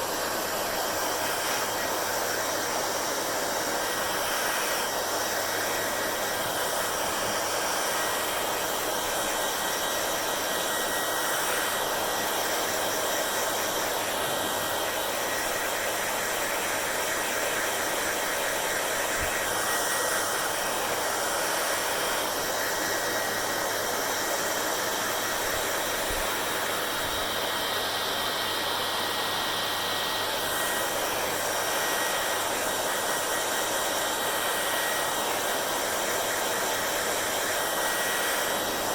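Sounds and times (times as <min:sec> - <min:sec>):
hair dryer running: 0:00.0 - 0:38.9.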